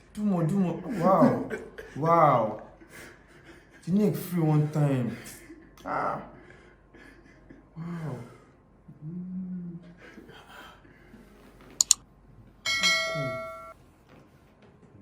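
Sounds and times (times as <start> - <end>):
man groaning and humming: 7.8 - 10.0
bell-like ding: 12.7 - 13.7.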